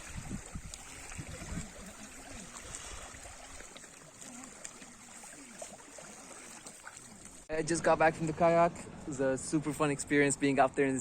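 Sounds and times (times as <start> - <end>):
water lapping against kayak hull: 0.0 - 7.5.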